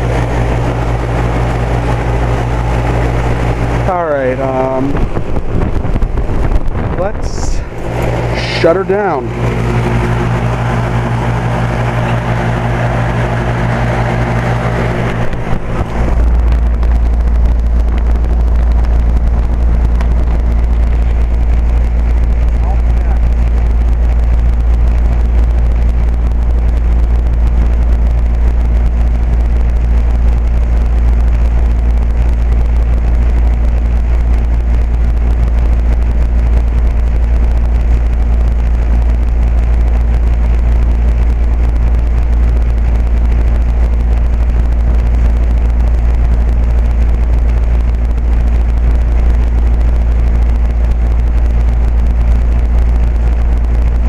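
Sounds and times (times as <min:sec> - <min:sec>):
compressor hum: 0:00.0 - 0:54.0
condenser fan whoosh: 0:00.0 - 0:54.0.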